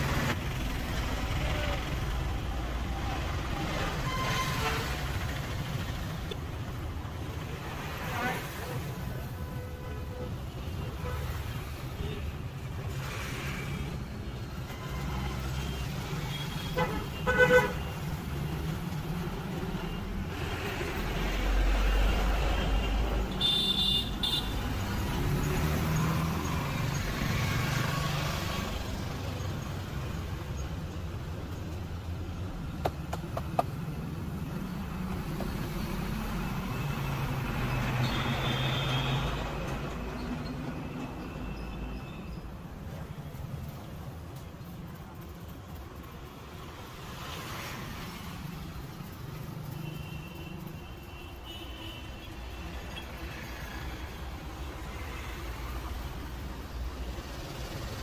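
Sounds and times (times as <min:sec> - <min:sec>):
street traffic: 0:00.0 - 0:58.0
vehicle horn tooting: 0:23.4 - 0:24.6.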